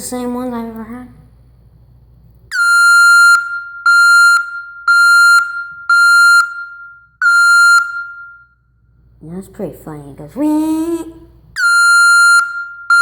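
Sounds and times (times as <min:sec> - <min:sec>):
vehicle backup alarm beeping: 0:02.5 - 0:08.6, 0:11.6 - 0:13.0.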